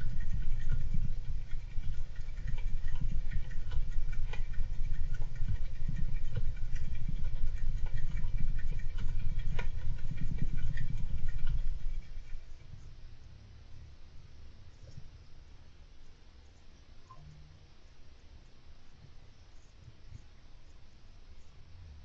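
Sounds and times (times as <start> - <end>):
hamster scratching in cage: 0.0 - 12.6
low rumble: 0.0 - 15.4.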